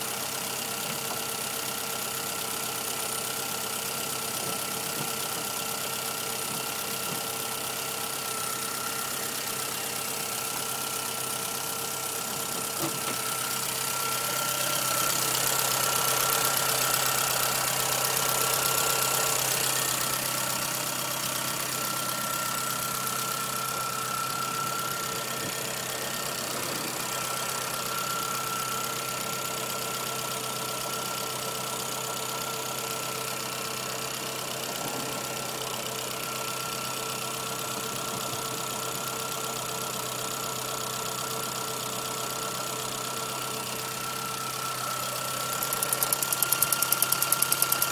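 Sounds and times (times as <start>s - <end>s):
car engine idling: 0.0s - 47.9s
rapid light ticking: 45.5s - 47.9s.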